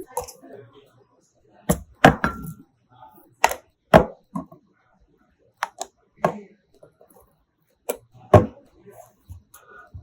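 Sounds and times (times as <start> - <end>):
food containers set on shelves: 1.6 - 2.7, 3.3 - 4.7, 5.6 - 10.0.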